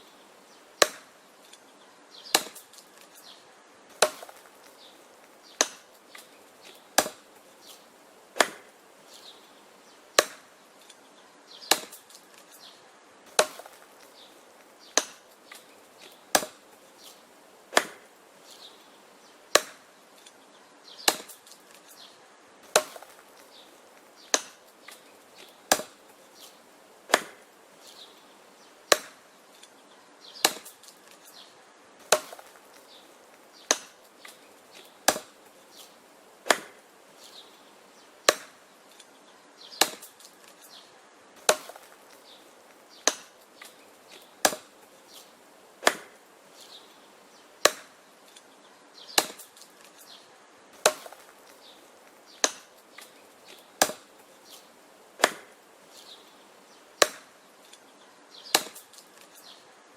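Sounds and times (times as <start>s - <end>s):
axe chopping wood: 0.8s - 1.2s, 2.3s - 3.1s, 3.9s - 4.8s, 5.5s - 7.8s, 8.4s - 8.8s, 10.2s - 10.9s, 11.6s - 12.5s, 13.3s - 16.7s, 17.7s - 18.1s, 19.5s - 19.9s, 21.0s - 22.0s, 22.6s - 27.5s, 28.9s - 29.2s, 30.4s - 31.4s, 32.0s - 37.4s, 38.2s - 38.6s, 39.7s - 40.7s, 41.4s - 45.2s, 45.8s - 46.2s, 47.6s - 48.4s, 49.1s - 50.0s, 50.8s - 54.2s, 55.2s - 55.6s, 57.0s - 57.3s, 58.5s - 59.3s.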